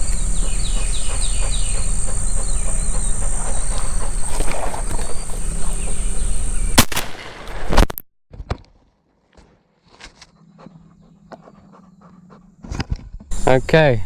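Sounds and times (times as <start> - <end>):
bird chirps: 0.0 - 7.6
high insect drone: 0.0 - 7.6, 13.3 - 14.0.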